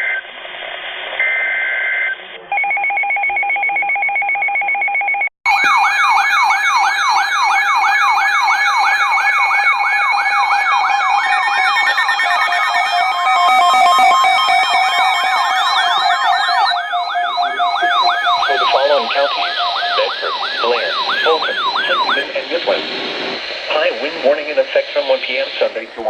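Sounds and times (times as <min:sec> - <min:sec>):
wailing siren tones: 0:05.5 - 0:25.1
pulsing two-tone alert signal: 0:10.6 - 0:24.6
warbling digital data burst: 0:11.2 - 0:25.8
beeping alert tones: 0:11.7 - 0:22.3.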